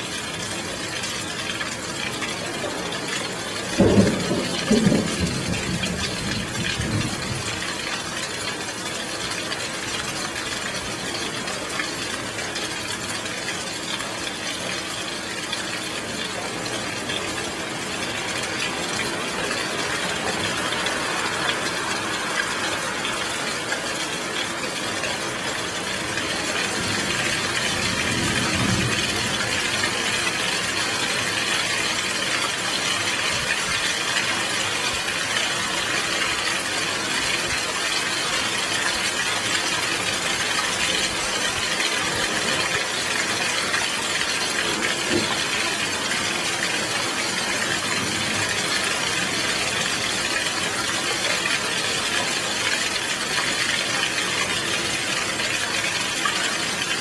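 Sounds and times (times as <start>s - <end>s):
heavy rain: 0.0s - 57.0s
thunder rumble: 3.7s - 7.8s, 17.8s - 30.1s.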